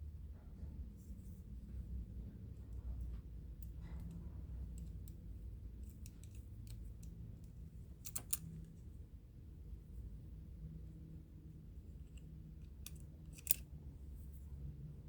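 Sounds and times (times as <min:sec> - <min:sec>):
small metallic clicks and taps: 0:03.0 - 0:08.7, 0:12.1 - 0:13.6.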